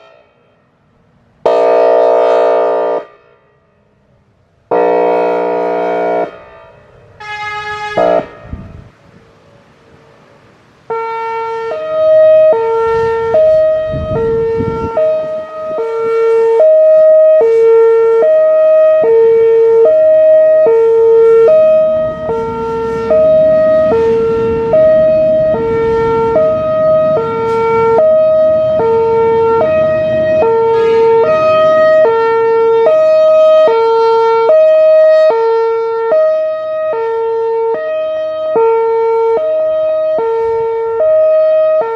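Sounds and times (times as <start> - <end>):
buzzy airhorn siren blast: 1.4 - 3.5, 4.7 - 8.9, 10.9 - 41.9
hi-lo siren tones: 1.5 - 3.1, 4.7 - 8.9, 10.9 - 41.9.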